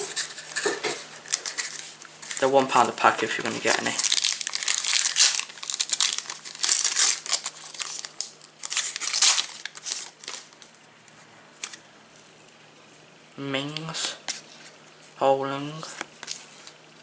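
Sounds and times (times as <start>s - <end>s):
plastic wrapper crinkling: 0.0s - 10.8s.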